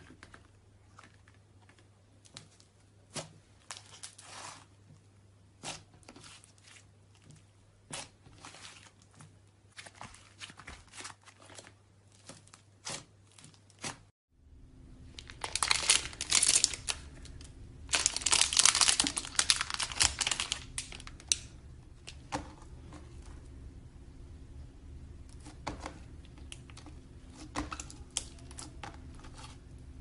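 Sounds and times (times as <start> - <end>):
slime crackling and popping: 15.1 - 21.5.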